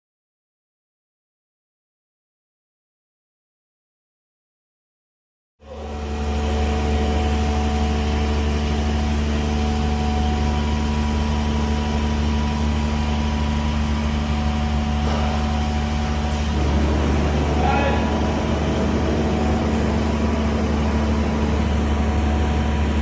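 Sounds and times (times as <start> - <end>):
engine hum with deep drone: 5.6 - 23.0.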